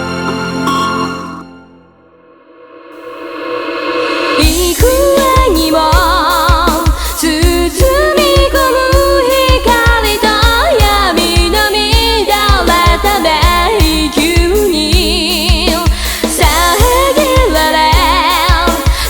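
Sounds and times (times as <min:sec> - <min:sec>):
person singing with vibrato: 0:04.0 - 0:19.0
kick-drum beat: 0:04.4 - 0:19.0.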